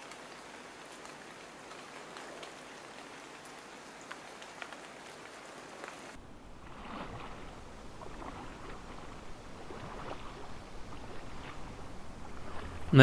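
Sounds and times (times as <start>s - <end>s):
light rain patter: 0.0s - 13.0s
paddle splashing in water: 6.2s - 13.0s
wind rumble on microphone: 6.2s - 13.0s.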